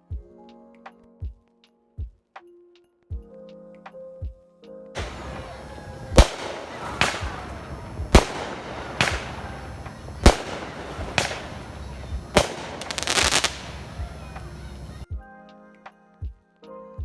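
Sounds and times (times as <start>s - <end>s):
fireworks booming: 5.0s - 15.0s
fireworks crackling: 5.0s - 15.0s.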